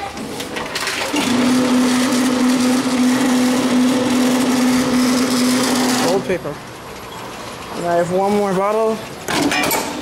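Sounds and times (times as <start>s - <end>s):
vending machine motor humming: 1.1s - 6.6s.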